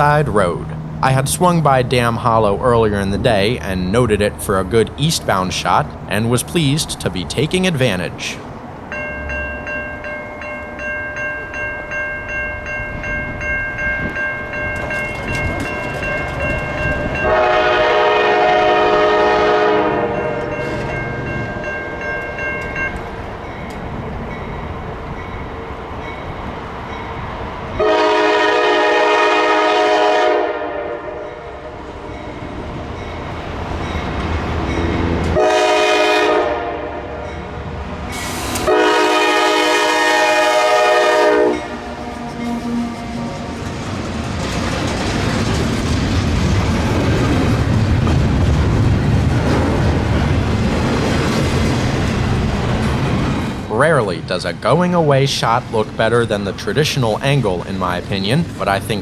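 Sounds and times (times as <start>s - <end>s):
locomotive rumble: 0.0s - 59.0s
locomotive air horn: 16.4s - 20.8s, 27.8s - 31.8s, 35.3s - 37.3s, 38.2s - 43.5s.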